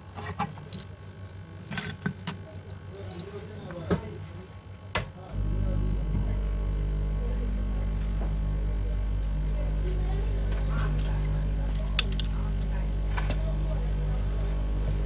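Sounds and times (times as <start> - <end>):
hot-air blower humming: 5.3 - 15.0.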